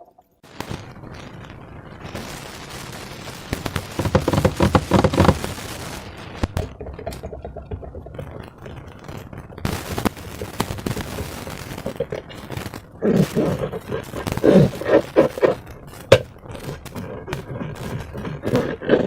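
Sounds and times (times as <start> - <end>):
slime air bubbles popping: 6.5 - 11.2.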